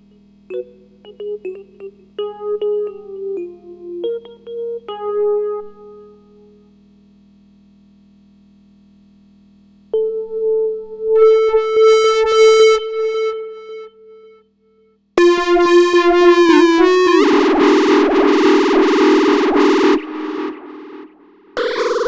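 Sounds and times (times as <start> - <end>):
bright wobbling synthesizer tone: 15.2 - 22.0
held buzzy synthesizer tone: 15.2 - 22.0.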